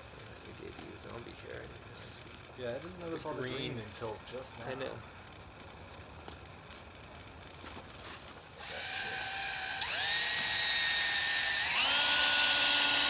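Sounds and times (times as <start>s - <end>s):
power drill whining: 8.5s - 13.0s.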